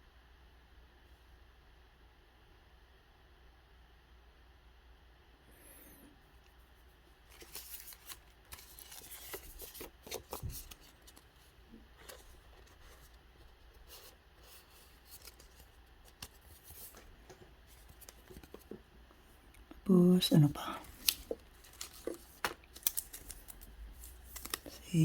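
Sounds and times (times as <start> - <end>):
trading cards being shuffled: 7.3 - 11.4, 13.9 - 18.8, 20.5 - 25.0.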